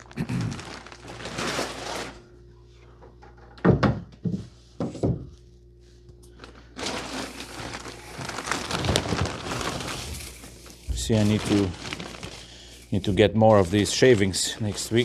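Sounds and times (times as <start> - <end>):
wood shavings rustling: 6.8 - 15.0.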